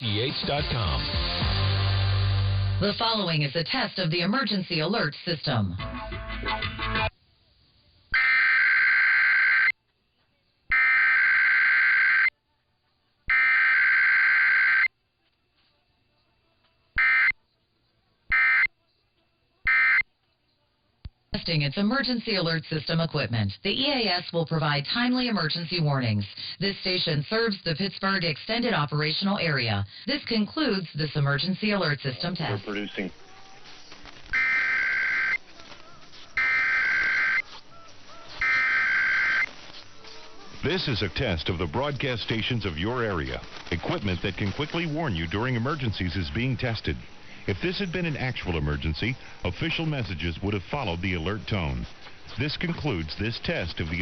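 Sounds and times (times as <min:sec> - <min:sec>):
digital data tone bursts: 0:31.7 - 0:40.0, 0:40.6 - 0:54.0
digital header bursts: 0:38.4 - 0:39.5.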